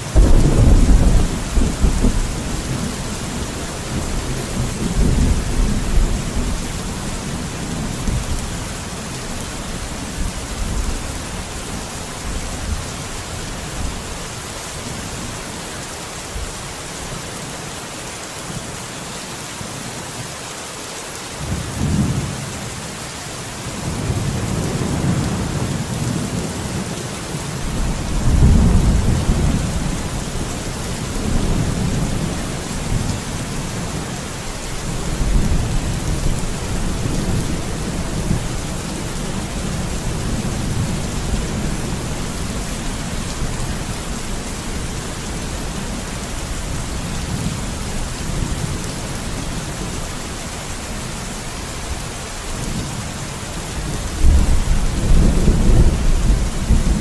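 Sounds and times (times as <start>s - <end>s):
steady rain falling: 0.0s - 57.0s
thunder rumbling: 0.1s - 8.9s, 27.6s - 49.9s, 53.8s - 57.0s.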